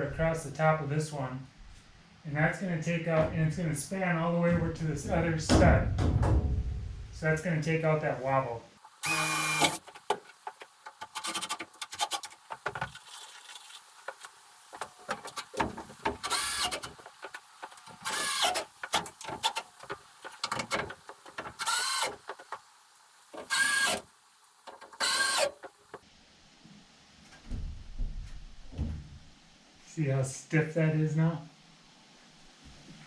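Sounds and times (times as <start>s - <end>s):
power drill driving screws into wood: 8.9s - 13.3s, 15.1s - 17.1s, 17.9s - 19.7s, 20.4s - 22.5s, 23.3s - 24.1s, 24.7s - 26.0s.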